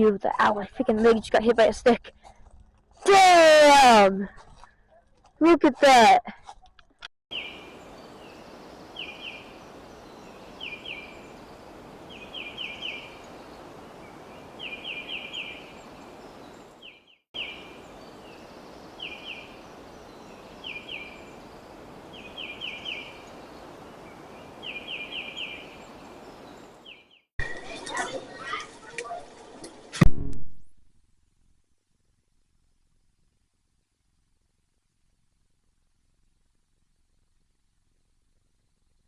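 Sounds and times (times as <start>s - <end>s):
steady outdoor hiss: 7.3s - 27.1s
bird calls: 7.3s - 27.2s.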